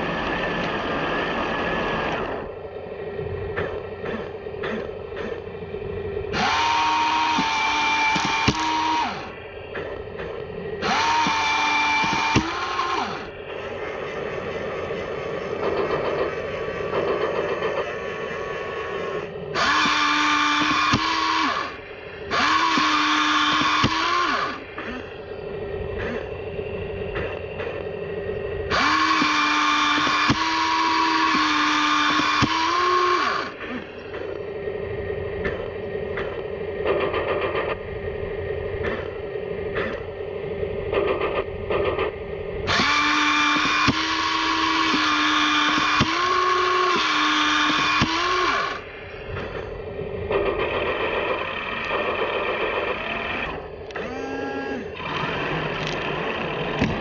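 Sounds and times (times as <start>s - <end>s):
toy tank motors whining: 0.0s - 57.0s
low clatter with clicks: 3.5s - 5.5s, 27.1s - 27.9s, 35.4s - 37.9s, 40.8s - 42.9s.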